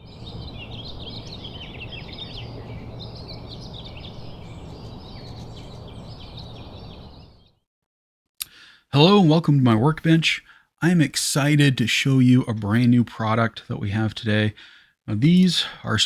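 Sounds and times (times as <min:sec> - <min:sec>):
small birds chirping: 0:00.0 - 0:07.6.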